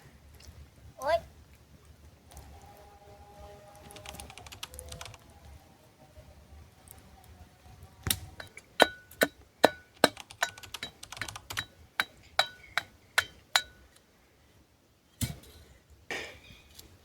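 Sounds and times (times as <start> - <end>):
sharp ringing clicks: 3.9 - 5.2, 9.9 - 11.8.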